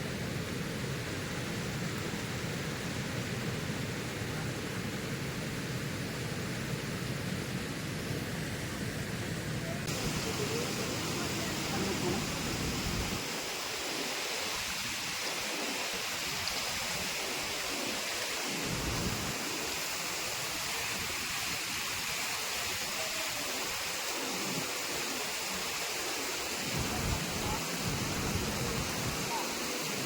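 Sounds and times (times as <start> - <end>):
steady rushing noise: 6.5 - 22.0.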